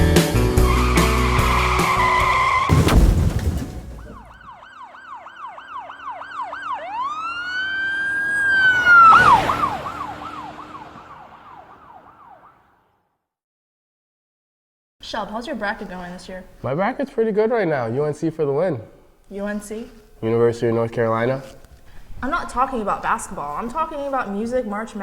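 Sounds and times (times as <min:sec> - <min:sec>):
music: 0:00.0 - 0:02.7
loud hit: 0:02.2 - 0:04.5
emergency vehicle siren: 0:04.2 - 0:13.0.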